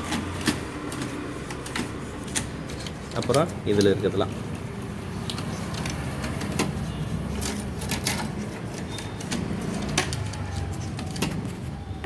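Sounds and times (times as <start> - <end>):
typewriter mechanism clicks: 7.4 - 11.6.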